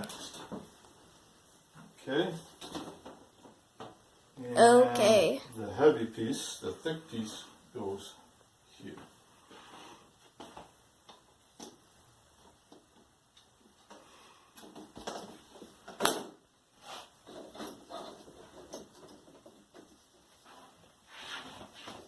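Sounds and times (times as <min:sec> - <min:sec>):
plastic sheets tapping and rustling: 0:10.3 - 0:16.5.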